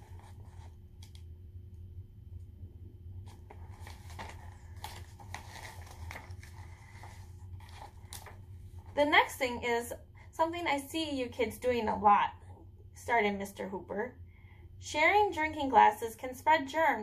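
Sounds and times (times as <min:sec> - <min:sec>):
book pages turning: 0:00.0 - 0:01.3, 0:03.2 - 0:09.0
low hum: 0:00.0 - 0:15.1.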